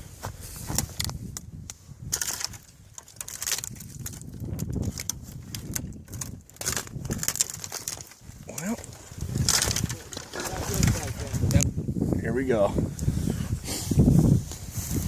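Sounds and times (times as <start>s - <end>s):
footsteps crunching through dry grass: 0.0s - 2.1s.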